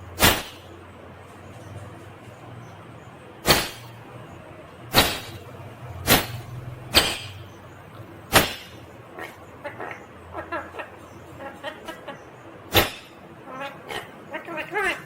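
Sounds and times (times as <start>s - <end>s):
parakeet chattering calls: 6.1s - 15.0s
parakeet screeching: 9.2s - 12.2s, 12.8s - 15.0s.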